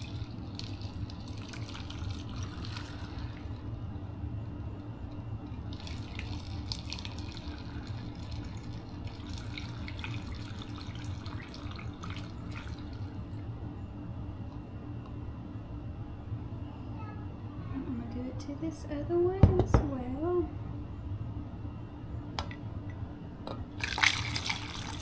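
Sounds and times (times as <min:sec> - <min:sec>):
liquid splashing and trickling: 0:05.7 - 0:13.2, 0:23.8 - 0:25.0.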